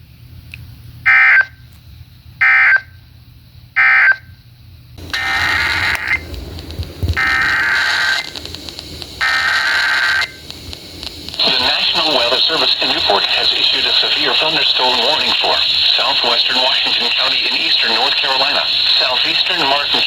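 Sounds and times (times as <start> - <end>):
radio hiss: 5.0 - 20.0
screeching digital data bursts: 5.1 - 6.3, 7.2 - 8.4, 9.2 - 10.4, 11.4 - 20.0.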